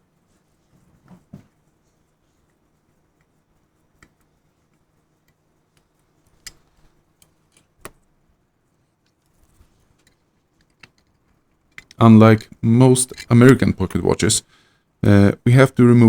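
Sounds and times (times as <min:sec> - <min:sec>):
tools clicking on metal: 0:10.0 - 0:12.0, 0:12.9 - 0:13.8.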